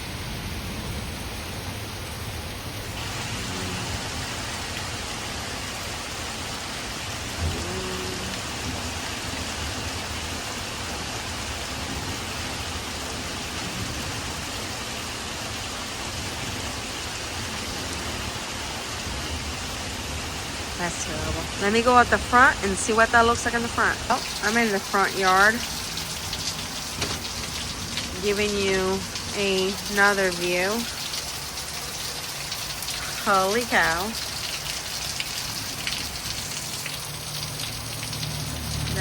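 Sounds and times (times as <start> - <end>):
steady rain falling: 0.0 - 39.0.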